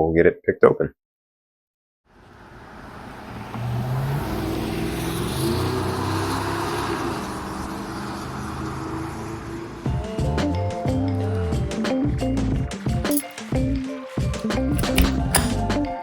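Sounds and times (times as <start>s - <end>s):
background music with bass line: 9.9s - 16.0s.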